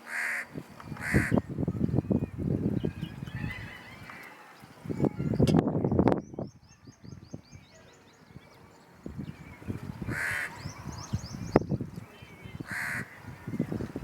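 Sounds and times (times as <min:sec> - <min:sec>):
harsh bird call: 0:10.1 - 0:11.4, 0:12.5 - 0:13.2.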